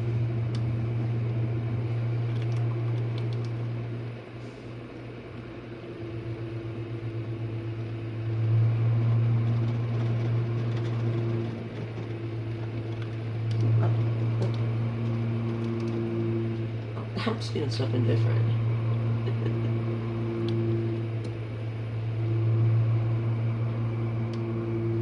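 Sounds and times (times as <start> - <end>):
dishwasher pump hum: 0.0 - 25.0.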